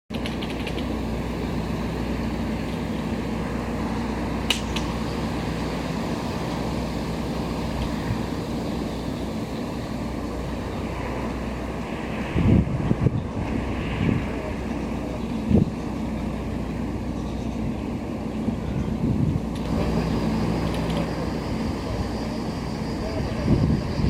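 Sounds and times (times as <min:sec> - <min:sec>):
sharp click: 0:00.1 - 0:00.9, 0:04.5 - 0:04.9
ship engines droning: 0:00.1 - 0:24.0.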